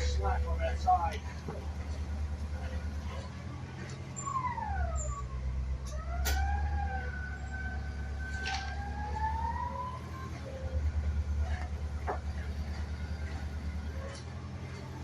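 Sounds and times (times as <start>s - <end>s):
forklift engine humming: 0.0s - 15.0s
siren-like whine: 4.2s - 10.8s.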